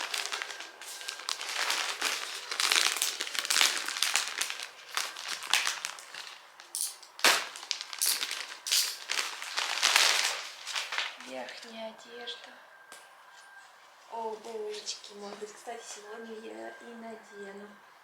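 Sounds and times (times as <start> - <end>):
packaging crinkling and rustling: 0.0 - 11.8
sharp packaging snap: 6.7 - 11.1.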